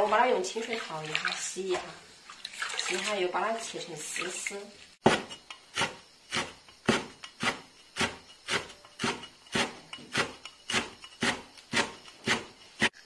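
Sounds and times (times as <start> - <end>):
knife slicing herbs on cutting board: 5.0 - 12.9.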